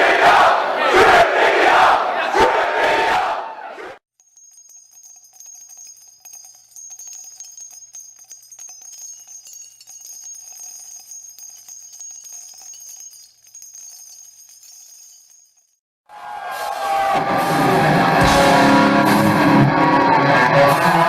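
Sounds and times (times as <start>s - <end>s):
crowd yelling and cheering: 0.0s - 4.0s, 16.1s - 21.0s
faint bell-like tinkling: 4.2s - 15.8s.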